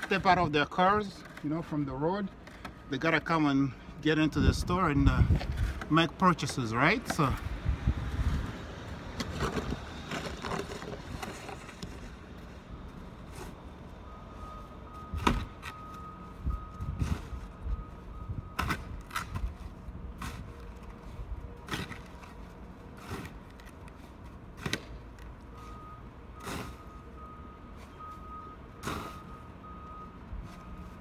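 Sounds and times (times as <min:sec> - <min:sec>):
low rumble of street traffic: 0:00.0 - 0:31.0
snow shovel scraping walkway: 0:09.2 - 0:12.2.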